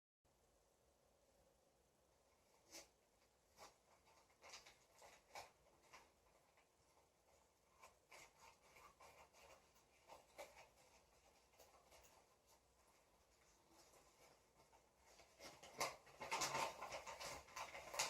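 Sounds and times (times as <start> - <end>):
packaging rustling and tapping: 13.7 - 18.0.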